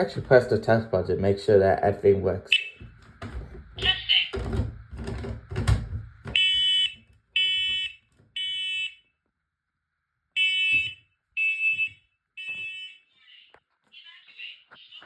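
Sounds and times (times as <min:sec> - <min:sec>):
smoke alarm beeping: 0:02.5 - 0:03.0, 0:06.3 - 0:09.1, 0:10.4 - 0:13.1
knocks: 0:02.8 - 0:06.8.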